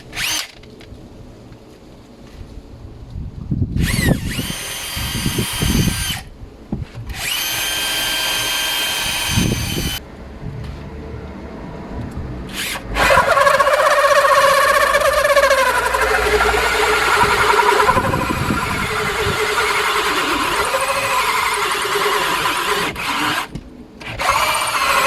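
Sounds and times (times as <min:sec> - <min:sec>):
wavering whirr: 0:00.0 - 0:00.8, 0:03.8 - 0:06.3, 0:06.9 - 0:25.0
electric drill boring into wood: 0:00.1 - 0:00.6, 0:03.8 - 0:06.3, 0:07.1 - 0:10.0, 0:12.5 - 0:25.0.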